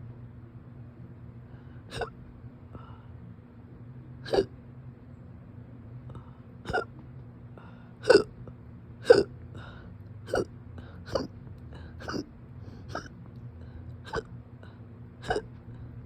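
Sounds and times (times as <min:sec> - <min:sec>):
person hiccuping: 0:01.9 - 0:02.2, 0:04.2 - 0:04.5, 0:06.7 - 0:07.0, 0:08.0 - 0:08.4, 0:09.0 - 0:09.3, 0:10.3 - 0:10.5, 0:11.1 - 0:11.4, 0:12.0 - 0:12.3, 0:12.9 - 0:13.1, 0:14.0 - 0:14.3, 0:15.2 - 0:15.6.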